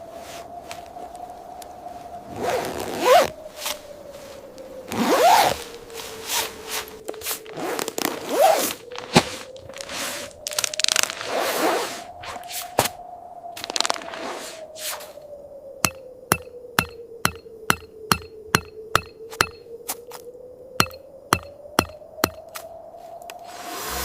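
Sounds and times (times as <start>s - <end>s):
zipper rasping: 7.5s - 8.8s.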